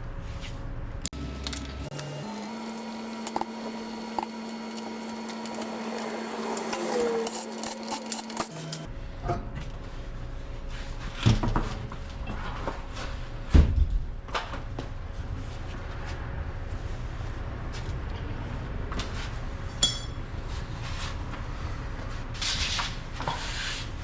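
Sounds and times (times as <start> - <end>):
tools clinking against metal: 1.1 - 8.9.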